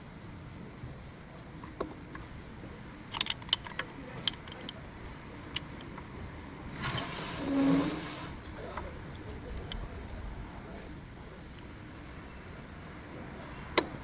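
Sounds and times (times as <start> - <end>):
metallic clicks of hand tools: 3.1 - 4.8.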